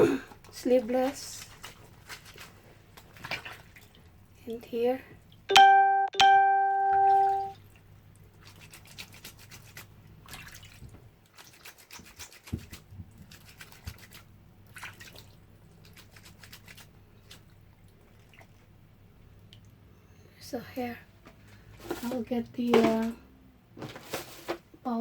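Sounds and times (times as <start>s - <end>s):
ringing musical note: 5.5s - 7.6s
clothes scrubbed by hand: 8.4s - 17.6s.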